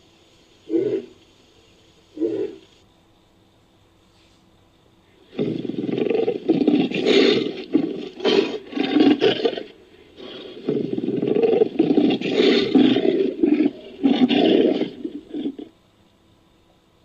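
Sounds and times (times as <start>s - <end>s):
big cat roaring: 5.3s - 15.7s.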